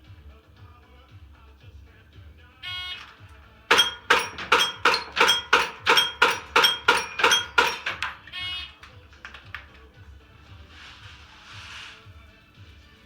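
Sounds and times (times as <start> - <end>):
pellets ringing on steel plates: 3.7 - 8.5
shot timer beep: 3.7 - 8.7.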